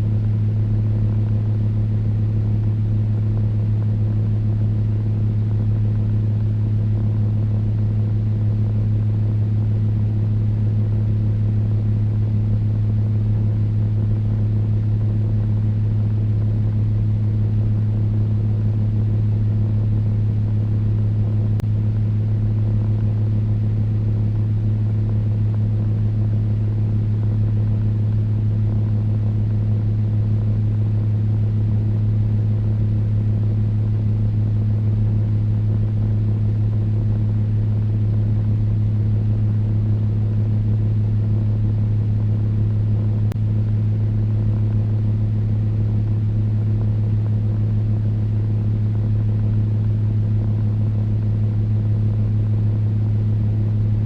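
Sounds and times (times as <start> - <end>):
electric fan humming: 0.0 - 54.0.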